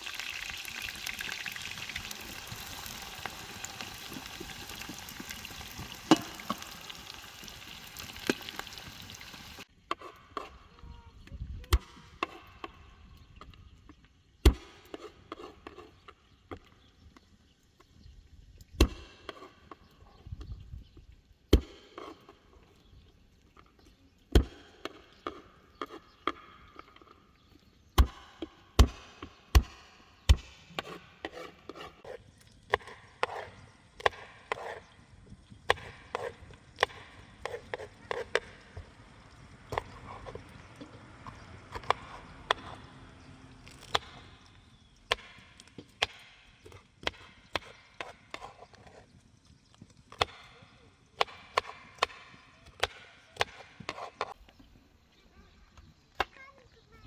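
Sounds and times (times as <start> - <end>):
chopping strikes on wood: 14.4 - 14.8, 21.5 - 21.8, 24.3 - 24.9, 28.0 - 30.9, 45.1 - 48.2, 51.2 - 54.3.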